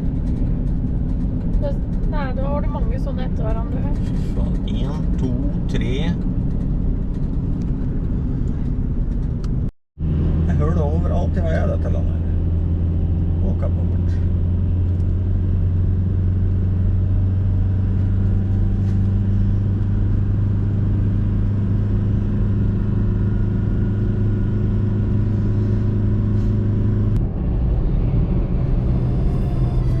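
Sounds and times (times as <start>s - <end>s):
car driving drone: 0.0s - 30.0s.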